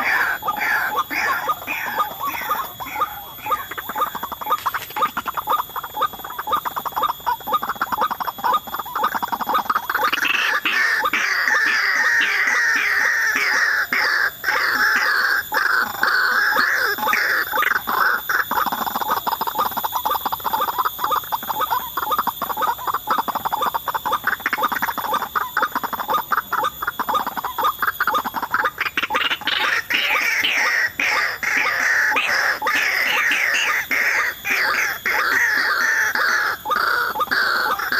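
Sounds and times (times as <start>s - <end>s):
bird croaking call: 0.0s - 37.9s
steady high whine: 0.0s - 37.9s.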